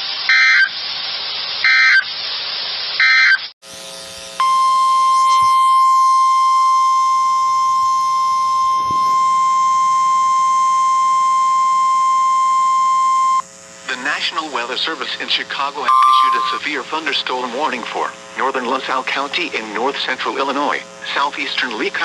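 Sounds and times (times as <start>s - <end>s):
radio static hiss: 0.0s - 3.5s, 5.2s - 5.6s, 13.4s - 22.0s
steady warning alarm tone: 0.3s - 0.8s, 1.6s - 2.1s, 4.4s - 17.8s
digital data bursts: 13.1s - 17.0s.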